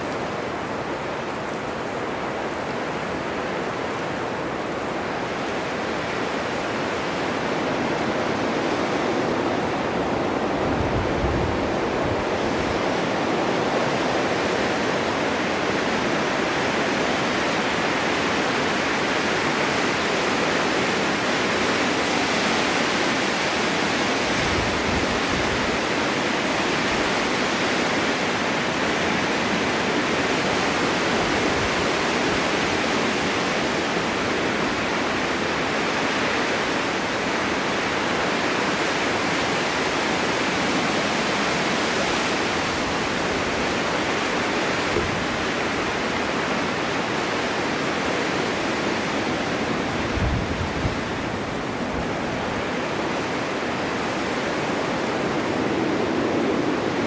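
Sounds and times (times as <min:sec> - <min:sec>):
low rumbling wind gusts: 0:00.0 - 0:57.0
snowstorm wind hissing: 0:00.0 - 0:57.0.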